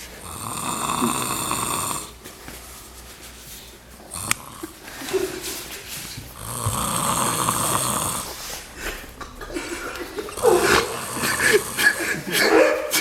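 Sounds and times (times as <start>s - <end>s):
person snoring: 0.2s - 2.2s, 4.1s - 4.9s, 6.3s - 12.3s.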